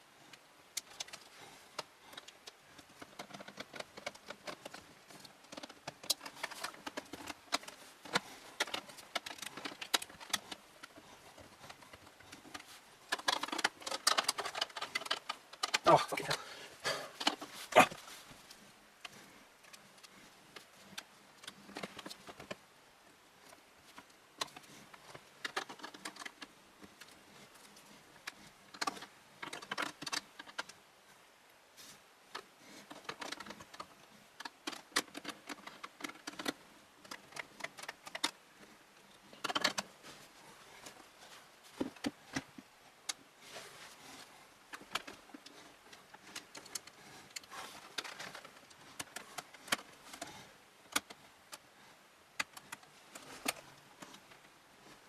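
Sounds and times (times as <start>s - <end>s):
computer parts clicking and rattling: 0.8s - 16.4s, 24.4s - 27.1s, 28.2s - 30.8s, 32.8s - 38.4s, 39.4s - 39.9s.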